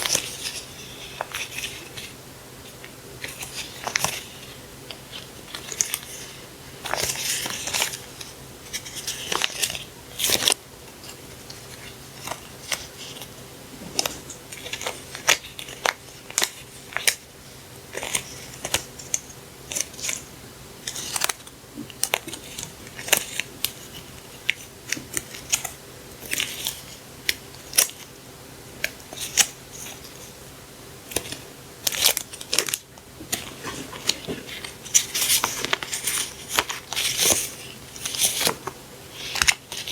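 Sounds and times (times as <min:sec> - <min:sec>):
packaging crinkling and clicking: 0:31.1 - 0:39.9.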